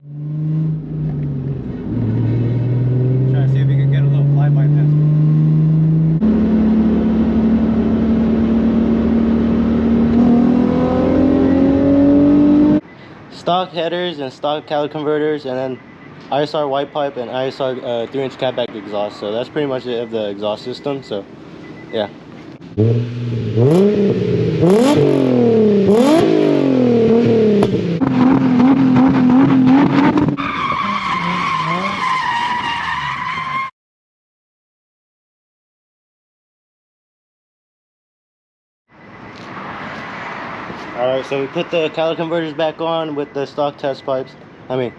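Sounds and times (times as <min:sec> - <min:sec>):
car engine accelerating: 0:00.0 - 0:12.8, 0:22.6 - 0:32.1
tyres squealing: 0:30.3 - 0:33.7.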